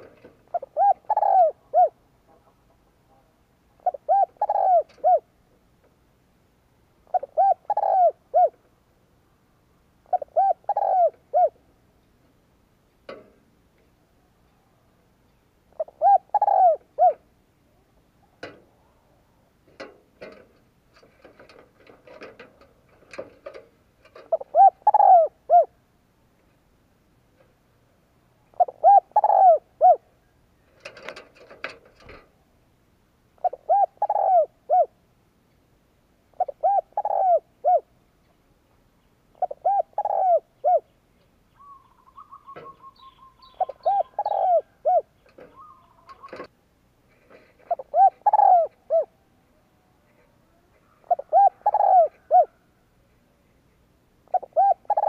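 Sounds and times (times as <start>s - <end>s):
dove cooing: 0.0s - 2.6s, 3.8s - 5.4s, 7.0s - 8.7s, 10.0s - 11.7s, 15.7s - 17.3s, 18.4s - 25.8s, 28.5s - 30.1s, 33.4s - 35.0s, 36.3s - 37.9s, 39.4s - 40.9s, 41.5s - 46.5s, 47.2s - 49.2s, 50.1s - 52.7s, 54.2s - 55.0s
soft chirps and clicks: 45.2s - 46.5s.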